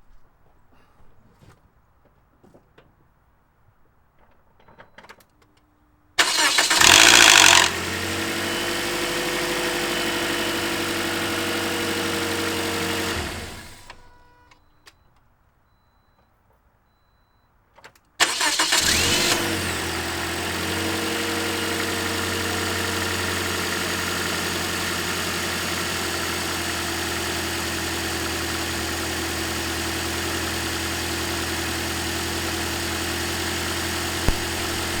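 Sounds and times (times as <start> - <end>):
engine rough rattle: 6.2 - 14.1, 18.2 - 35.0
car engine starting and idling: 6.2 - 14.4, 18.2 - 35.0
sharp click: 34.2 - 35.0.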